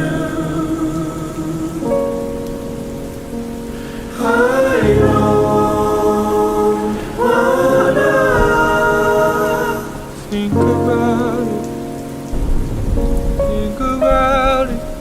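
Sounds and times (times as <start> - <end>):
choir-like sung harmony: 0.0 - 11.9.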